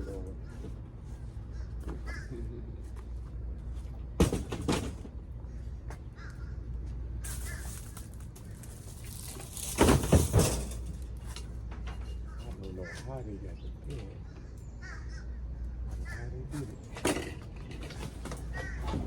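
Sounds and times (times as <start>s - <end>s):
crows cawing: 0.4s - 2.8s, 5.4s - 8.6s, 12.2s - 16.6s, 18.4s - 19.0s.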